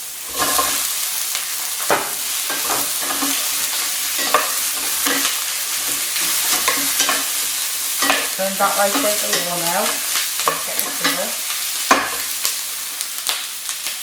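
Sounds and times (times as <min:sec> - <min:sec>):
chicken sizzling in a pan: 0:00.0 - 0:14.0
utensil scraping a pan: 0:00.3 - 0:00.9, 0:01.9 - 0:12.3.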